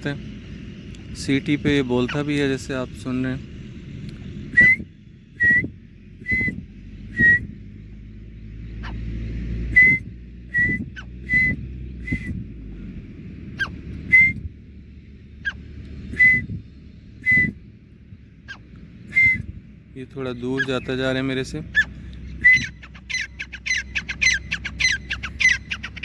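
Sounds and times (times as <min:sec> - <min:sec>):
short whistled notes: 0:04.6 - 0:07.5, 0:09.8 - 0:12.4, 0:14.1 - 0:14.5, 0:16.1 - 0:16.6, 0:17.2 - 0:17.6, 0:19.1 - 0:19.5, 0:22.4 - 0:22.8
francolin calling: 0:08.8 - 0:09.1, 0:09.8 - 0:12.3, 0:13.6 - 0:14.4, 0:15.4 - 0:16.5, 0:17.2 - 0:17.6, 0:18.4 - 0:19.4, 0:20.3 - 0:26.0.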